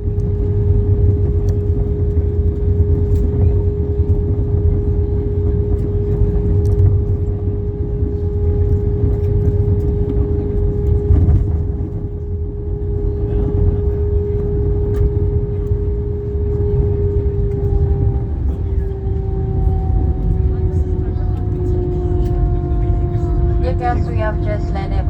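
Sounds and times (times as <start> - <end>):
airplane cabin rumble: 0.0 - 25.0
constant cabin hum: 0.0 - 25.0.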